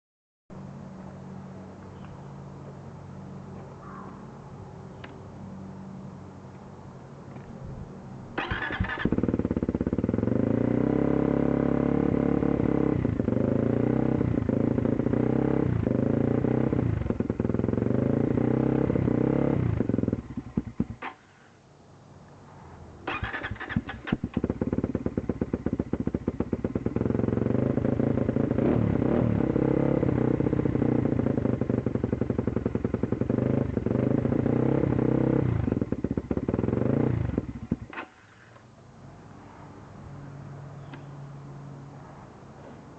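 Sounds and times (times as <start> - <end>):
engine cranking: 8.4 - 9.9, 23.1 - 24.9
small engine running unevenly: 23.2 - 38.5.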